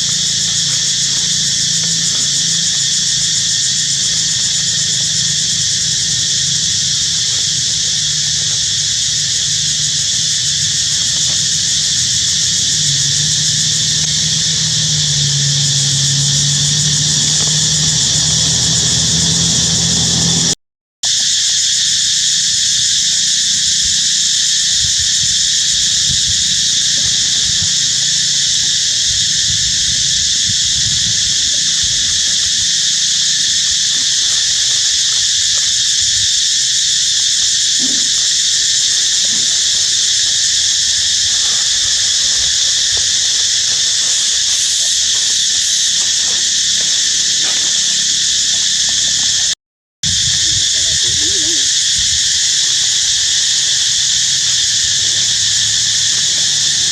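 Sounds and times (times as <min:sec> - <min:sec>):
insect chorus buzzing: 0:00.0 - 0:56.9
low rumble: 0:11.8 - 0:20.6.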